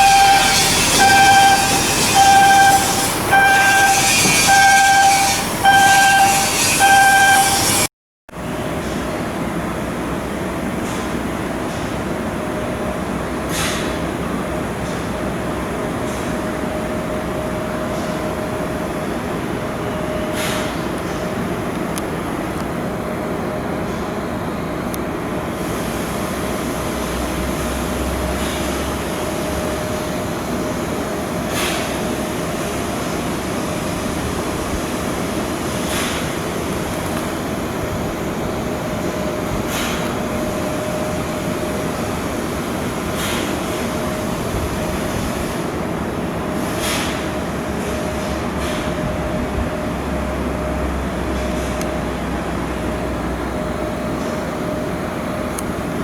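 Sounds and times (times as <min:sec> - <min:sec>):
machine hum: 0:00.0 - 0:07.9.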